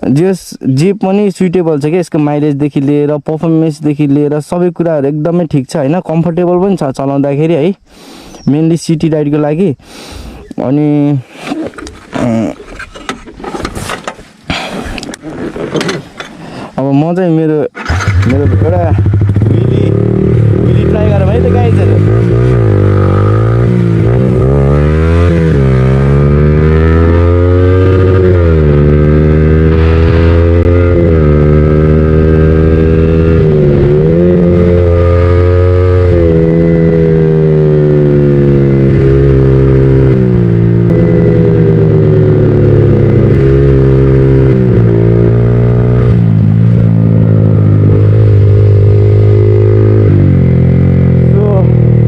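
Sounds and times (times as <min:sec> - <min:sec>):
motorcycle engine revving: 0:17.8 - 0:52.0.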